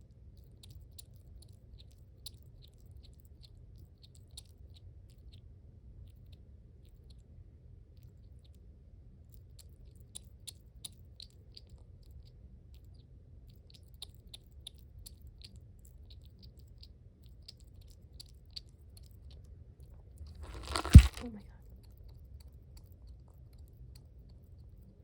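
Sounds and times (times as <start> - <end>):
pet crunching dry food: 20.2 - 21.4.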